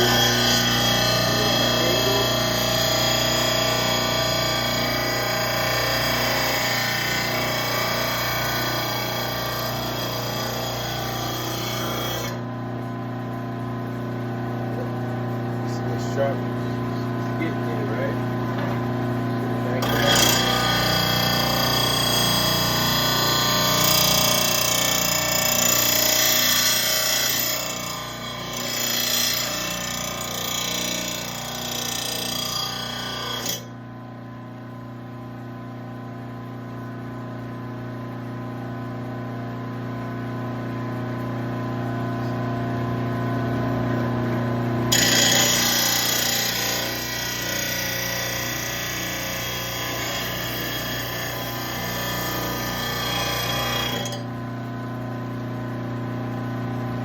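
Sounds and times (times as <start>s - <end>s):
blade grinding on sharpener: 0.0s - 12.4s, 19.7s - 33.7s, 44.9s - 54.3s
motor humming: 0.0s - 13.3s.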